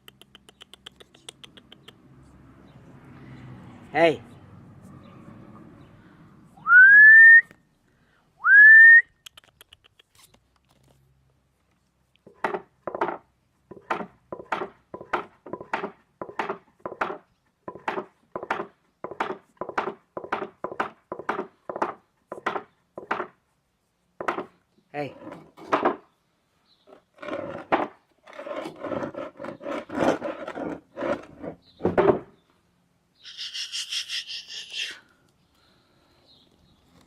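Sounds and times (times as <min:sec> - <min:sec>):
person whistling upward: 0:06.6 - 0:07.6, 0:08.4 - 0:09.2.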